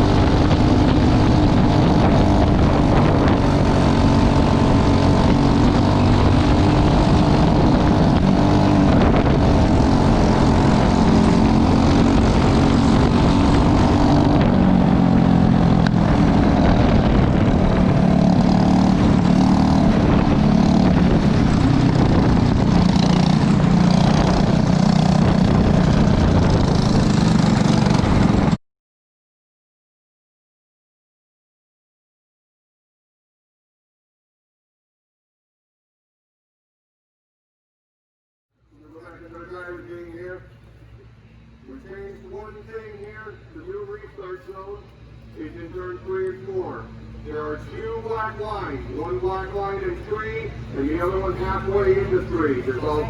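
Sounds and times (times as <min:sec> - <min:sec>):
kart engine running hard: 0:00.0 - 0:28.6, 0:44.6 - 0:53.0.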